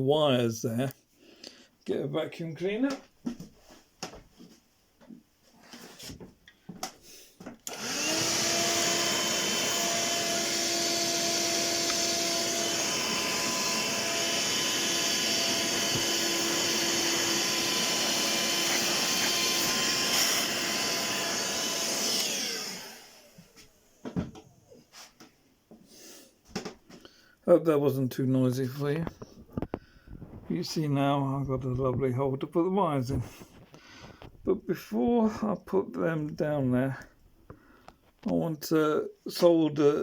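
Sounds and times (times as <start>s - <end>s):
vacuum cleaner motor whine: 7.7s - 24.6s.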